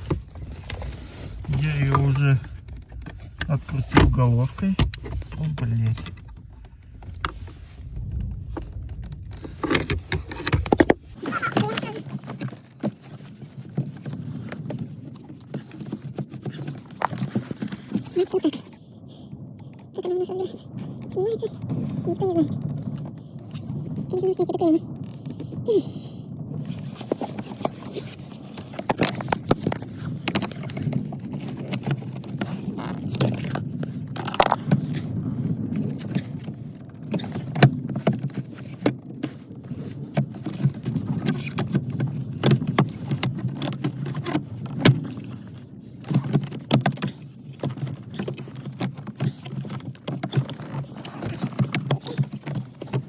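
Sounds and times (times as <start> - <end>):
steady low rumble: 0.0 - 12.1, 17.3 - 43.5.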